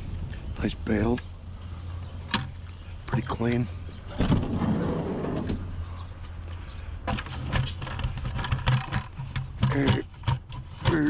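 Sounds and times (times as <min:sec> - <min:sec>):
sharp clicks and knocks: 0:02.3 - 0:03.3, 0:07.0 - 0:11.0.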